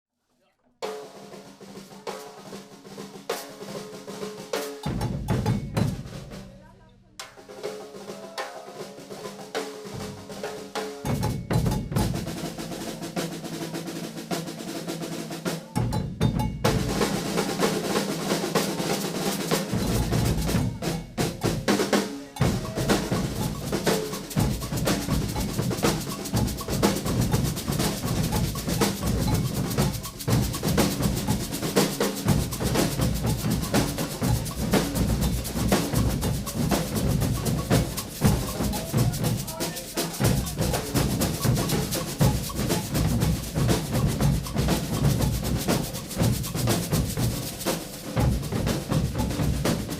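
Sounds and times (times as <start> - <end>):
snare drums rolling: 0.9 - 6.5, 7.2 - 49.9
bass drums: 4.9 - 6.7, 11.1 - 13.7, 15.7 - 49.9.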